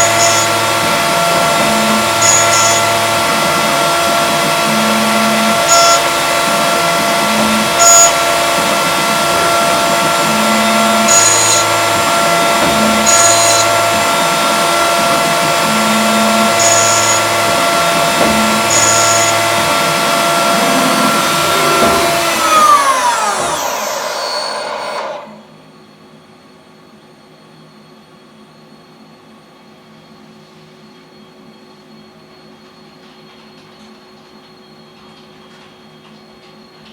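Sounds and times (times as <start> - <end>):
axis drives humming: 0.0 - 25.6
milling machine spindle whine: 0.0 - 26.0.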